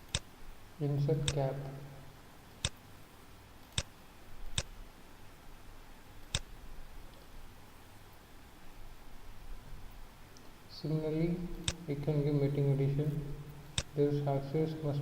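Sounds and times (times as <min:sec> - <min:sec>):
computer mouse clicking: 0:00.0 - 0:00.3, 0:02.6 - 0:02.8, 0:03.6 - 0:03.9, 0:06.3 - 0:07.2
faint low hum: 0:00.0 - 0:15.0.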